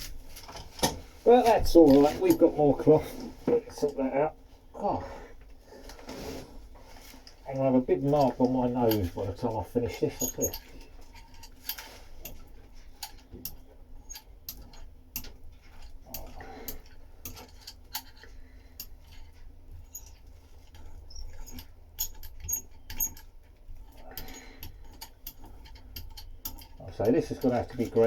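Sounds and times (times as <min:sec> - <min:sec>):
steady low hum: 0:00.0 - 0:28.0
light clicks and crackles: 0:06.8 - 0:28.0.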